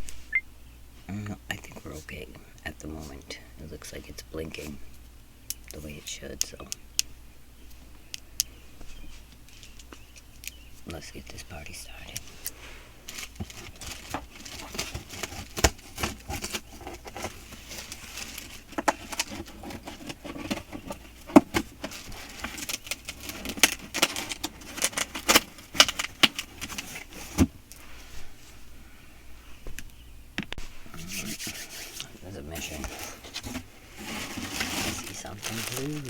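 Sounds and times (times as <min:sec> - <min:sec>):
cardboard box rustling and scraping: 0:13.1 - 0:28.4, 0:30.9 - 0:36.0.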